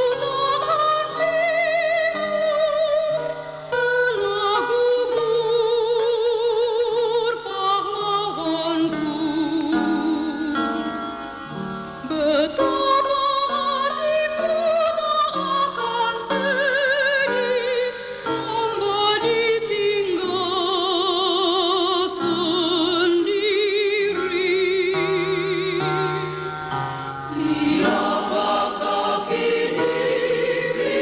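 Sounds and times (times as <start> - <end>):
person singing with vibrato: 0.0 - 31.0
sustained accompaniment: 24.9 - 31.0.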